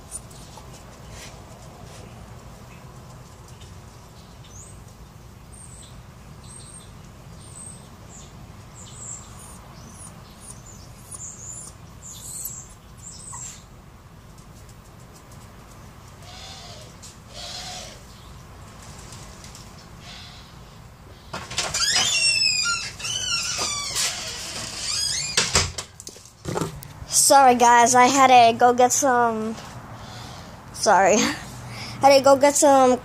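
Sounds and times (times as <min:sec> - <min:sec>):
small birds chirping: 0:02.0 - 0:13.8
lower bird calls: 0:05.5 - 0:13.7.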